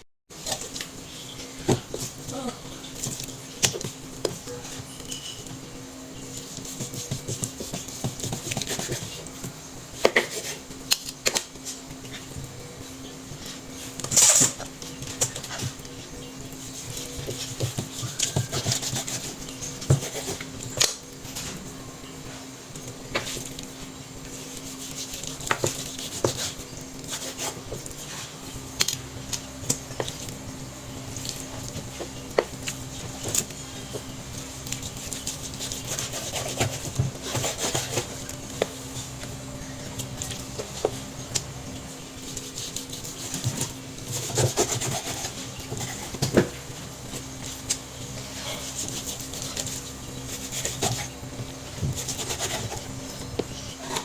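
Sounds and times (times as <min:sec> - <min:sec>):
steady low hum: 0:00.3 - 0:54.0
knife scraping cutting board: 0:06.3 - 0:09.3, 0:16.5 - 0:21.6, 0:24.4 - 0:29.0, 0:31.2 - 0:39.2, 0:42.2 - 0:54.0.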